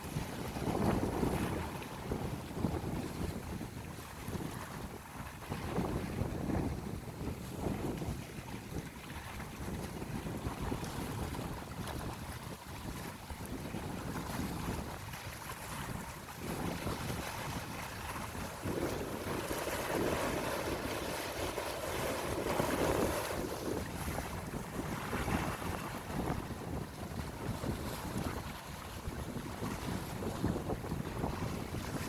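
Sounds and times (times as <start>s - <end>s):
wind buffeting microphone: 0.0s - 32.0s
sea waves washing onto shore: 8.8s - 32.0s.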